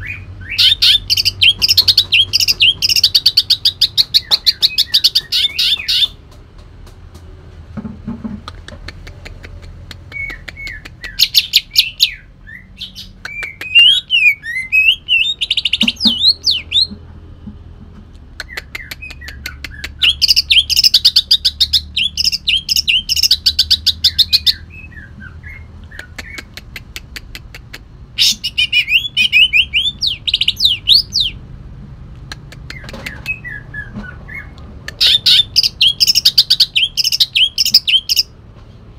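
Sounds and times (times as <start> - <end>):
songbird singing rattles and whistles: 0.0 - 6.2, 9.5 - 17.1, 18.3 - 26.6, 28.2 - 31.4, 32.6 - 38.3.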